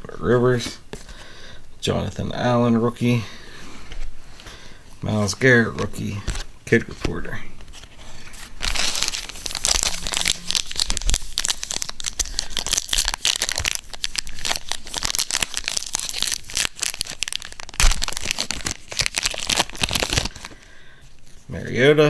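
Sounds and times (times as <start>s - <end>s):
plastic foil wrapper crinkling: 7.7s - 20.7s.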